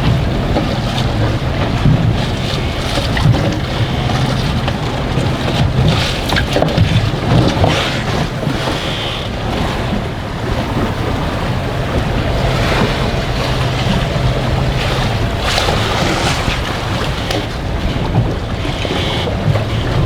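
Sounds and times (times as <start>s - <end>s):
water lapping against boat: 0.0s - 20.0s
wind buffeting microphone: 0.0s - 20.0s
low steady hum: 9.4s - 18.3s.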